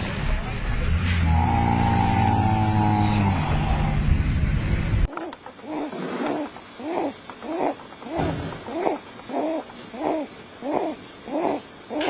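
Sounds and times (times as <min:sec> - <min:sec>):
animal snoring low rumble: 0:00.8 - 0:12.0
animal snoring whistling breaths: 0:05.2 - 0:12.0.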